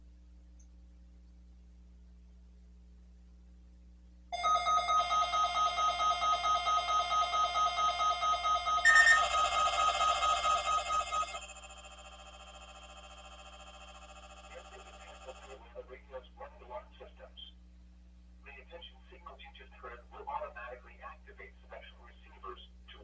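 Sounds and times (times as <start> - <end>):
faint steady tone: 4.3 - 16.4
alarm beeping rapidly: 4.4 - 15.6.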